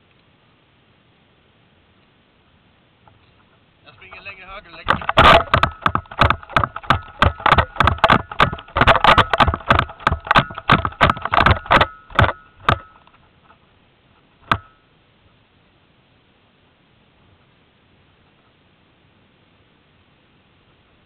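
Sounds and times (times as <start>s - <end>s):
running footsteps: 3.4s - 13.2s
gear rattling: 3.4s - 13.6s
thump: 4.8s - 12.9s.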